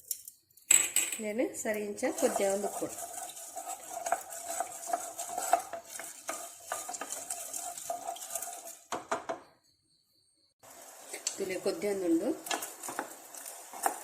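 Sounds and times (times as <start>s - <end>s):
spoon clinking and scraping pan: 0.0s - 9.4s, 12.4s - 14.0s.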